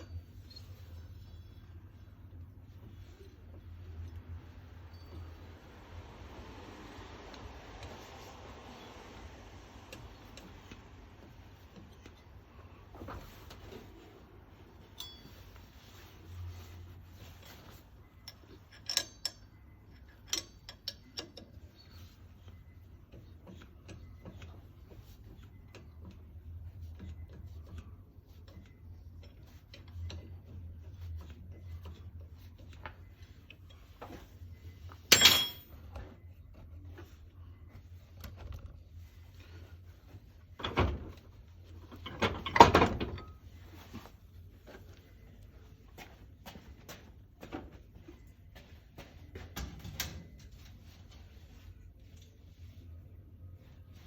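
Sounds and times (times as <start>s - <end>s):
faint low hum: 0.0s - 54.0s
metal tools clinking on workbench: 14.8s - 15.6s, 35.1s - 35.8s
sharp metal clank: 35.1s - 35.7s.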